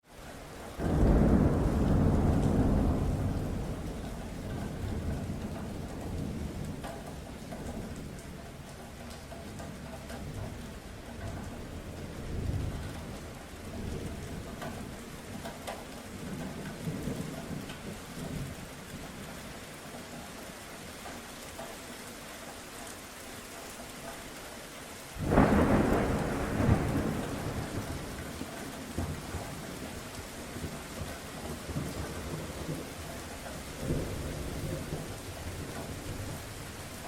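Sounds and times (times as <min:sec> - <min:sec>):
steady rain falling: 0:00.0 - 0:37.0
low rolls of thunder: 0:00.7 - 0:08.7, 0:09.7 - 0:19.4, 0:25.2 - 0:37.0
loud thunderclap: 0:00.8 - 0:06.8, 0:25.2 - 0:29.7.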